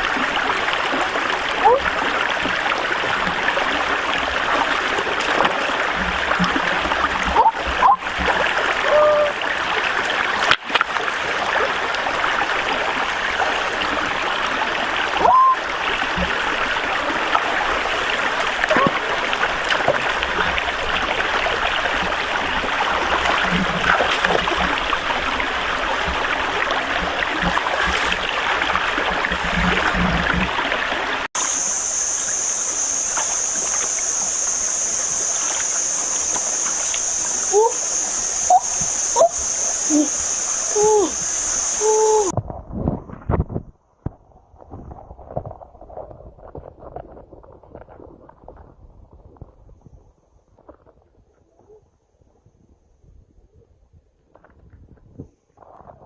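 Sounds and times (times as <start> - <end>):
small water splashes: 0.0 - 31.3
stream water flowing: 0.0 - 42.4.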